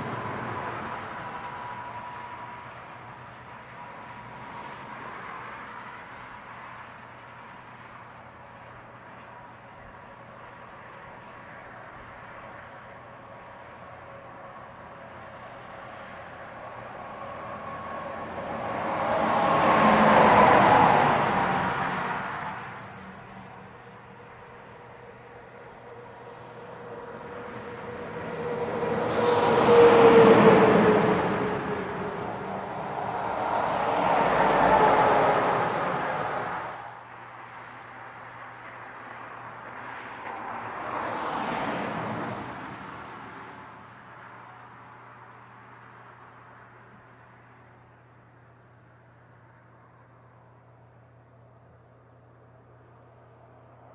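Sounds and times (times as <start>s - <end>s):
heavy truck passing: 0.0s - 6.2s, 15.2s - 37.0s, 38.6s - 44.0s.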